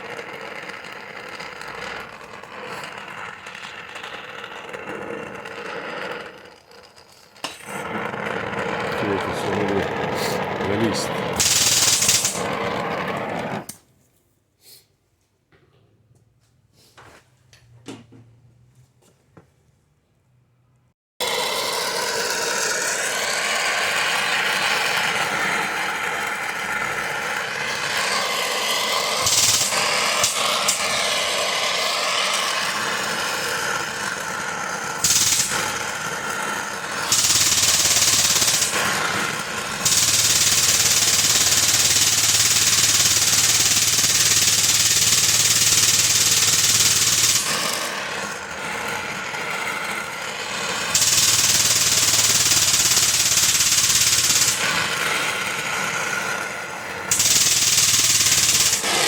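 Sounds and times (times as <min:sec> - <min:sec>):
pneumatic tool hammering: 0:08.9 - 0:13.8, 0:21.2 - 0:59.0.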